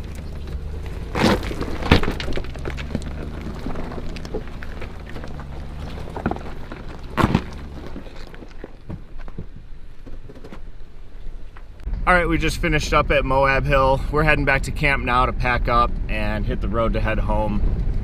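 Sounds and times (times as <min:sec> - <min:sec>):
off-road vehicle engine running: 0:00.0 - 0:09.6
sharp cracks and thuds: 0:00.0 - 0:10.6.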